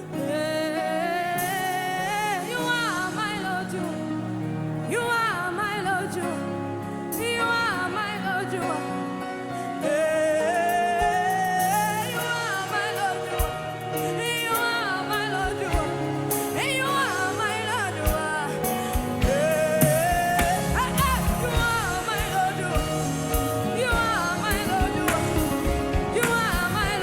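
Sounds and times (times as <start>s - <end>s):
band playing sustained chords: 11.3s - 27.0s.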